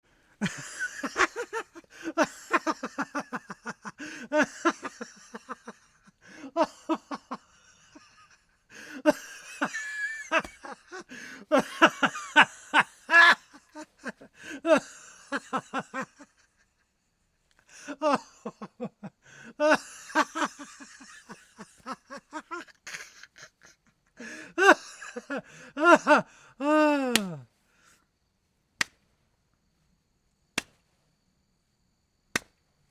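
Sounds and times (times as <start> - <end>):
man laughing hard: 0.4 - 16.8, 17.7 - 27.4.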